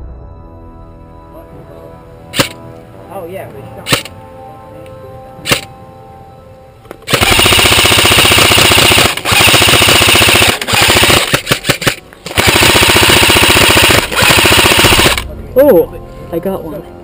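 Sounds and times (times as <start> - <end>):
airsoft gun full-auto bursts: 7.1 - 15.2.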